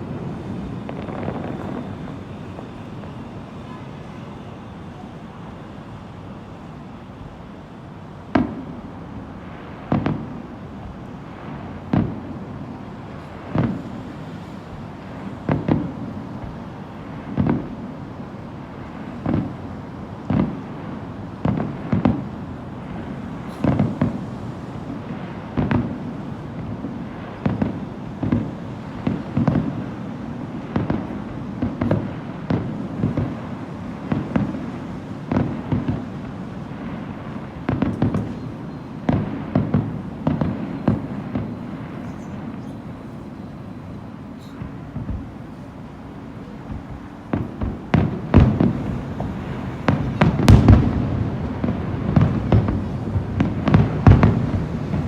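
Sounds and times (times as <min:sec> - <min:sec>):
firework shells booming: 0:00.0 - 0:05.1, 0:19.0 - 0:55.0
continuous low rumble: 0:00.0 - 0:55.0.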